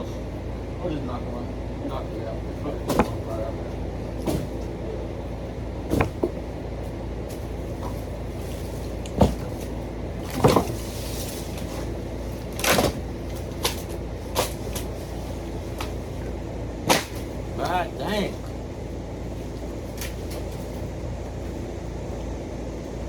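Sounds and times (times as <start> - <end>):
wooden boards knocking: 2.9 - 3.3, 5.9 - 6.5, 10.3 - 10.8.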